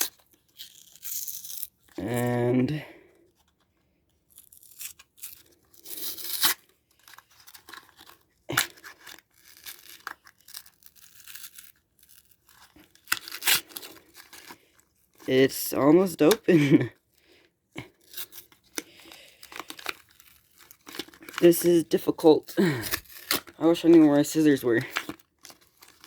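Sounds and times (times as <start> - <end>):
packaging crackling and snipping: 0.0 - 2.3, 3.3 - 15.3, 17.8 - 26.0
packaging ripping: 0.0 - 2.4, 4.3 - 15.3, 17.9 - 26.0.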